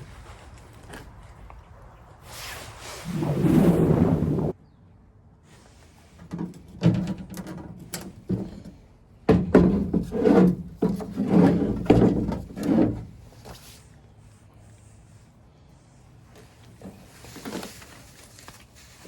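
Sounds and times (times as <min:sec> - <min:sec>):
tools and parts knocking and clunking: 0:06.2 - 0:13.1.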